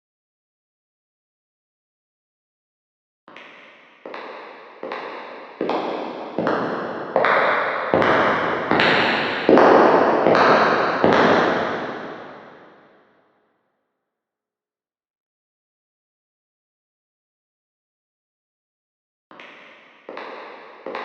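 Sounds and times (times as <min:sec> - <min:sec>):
echoing footsteps: 0:03.4 - 0:12.7.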